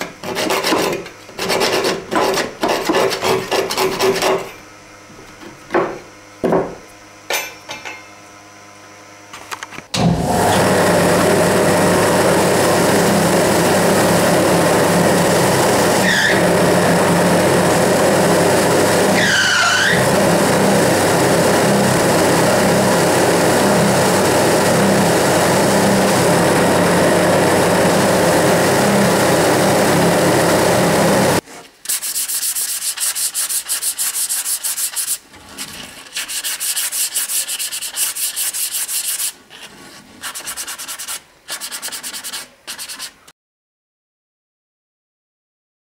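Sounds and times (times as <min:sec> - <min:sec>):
hand sanding wood: 0:00.2 - 0:04.4, 0:31.9 - 0:43.3
electric power tool running: 0:10.0 - 0:31.4.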